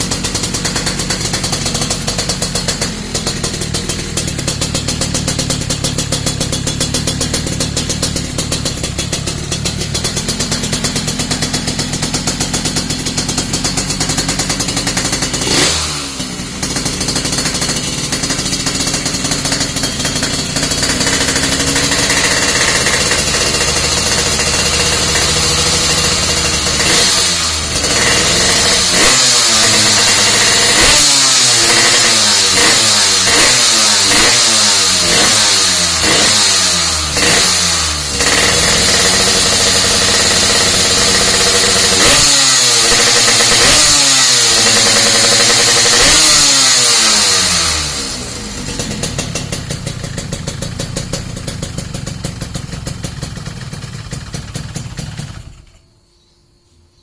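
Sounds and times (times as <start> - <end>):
motorcycle engine revving: 0.0 - 55.9
motorcycle engine idling: 0.0 - 57.0.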